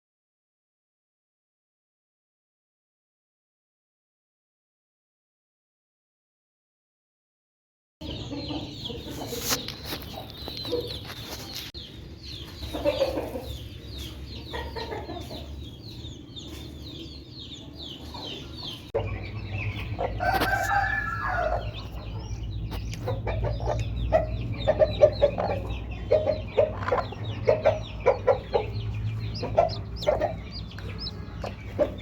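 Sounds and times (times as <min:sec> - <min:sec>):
chicks peeping: 0:08.0 - 0:32.0
hen clucking: 0:08.0 - 0:32.0.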